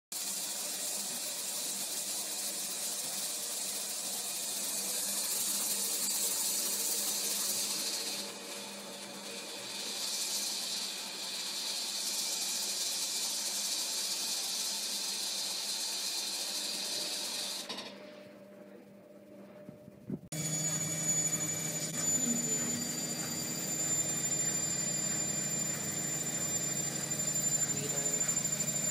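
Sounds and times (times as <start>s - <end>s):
washing machine hiss: 0.2s - 17.7s, 20.4s - 28.9s
thin high whine: 16.0s - 28.9s.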